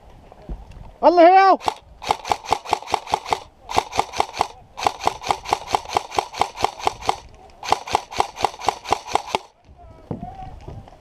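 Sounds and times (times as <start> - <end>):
airsoft gun firing single shots: 1.6 - 9.5.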